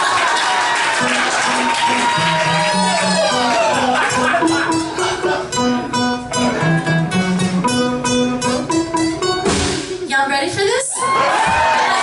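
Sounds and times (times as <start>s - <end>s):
strummed string instrument chords: 1.2s - 10.0s.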